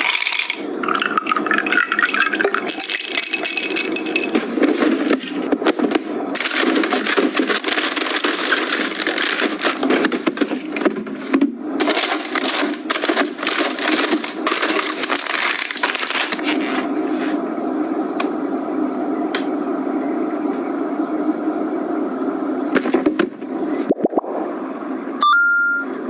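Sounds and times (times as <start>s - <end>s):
food packaging crackling: 0.0s - 17.4s.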